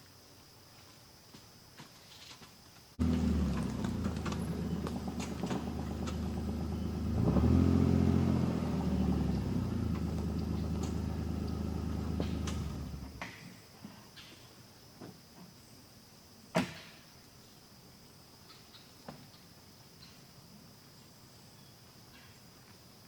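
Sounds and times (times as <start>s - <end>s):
utility vehicle engine revving: 3.0s - 13.2s.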